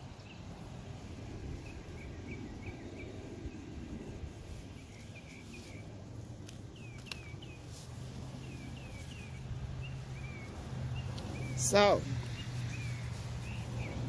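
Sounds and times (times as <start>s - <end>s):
small bird chirping: 4.3s - 14.0s.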